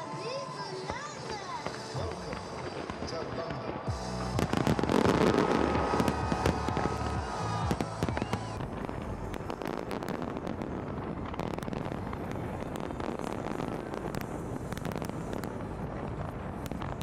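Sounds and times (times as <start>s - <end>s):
music: 0.0s - 9.9s
fireworks bangs and crackling: 0.0s - 17.0s.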